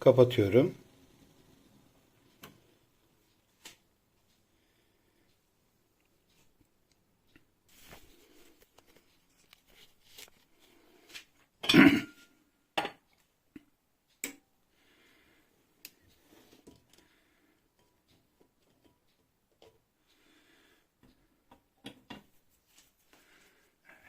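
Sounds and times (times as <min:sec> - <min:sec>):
cookware and utensils clattering: 0:11.6 - 0:13.0.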